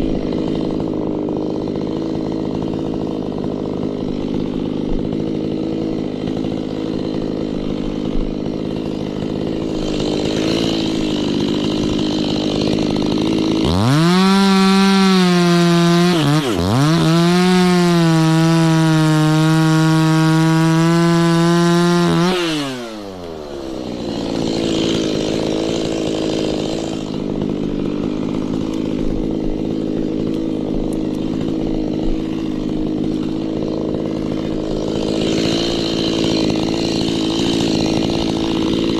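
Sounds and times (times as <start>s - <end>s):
chainsaw idling and revving: 0.0s - 38.9s.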